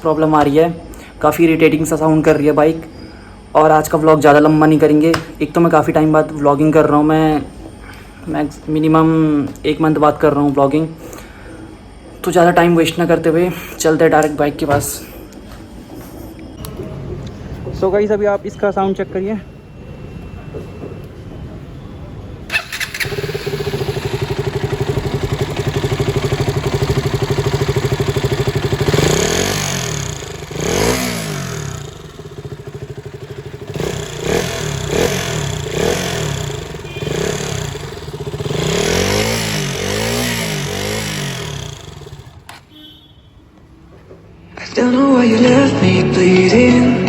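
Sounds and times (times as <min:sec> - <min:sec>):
motorcycle engine idling and revving: 0:22.5 - 0:42.6.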